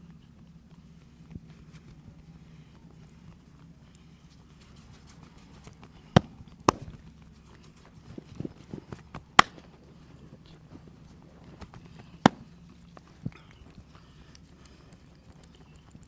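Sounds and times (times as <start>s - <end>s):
steady low hum: 0.0s - 16.0s
sharp snapping cracks: 9.4s - 9.8s, 11.6s - 12.6s
soft taps: 11.6s - 12.5s.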